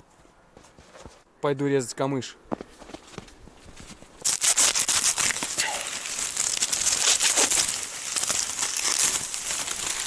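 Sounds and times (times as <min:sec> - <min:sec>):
dry reeds rustling and snapping: 0:04.2 - 0:10.0.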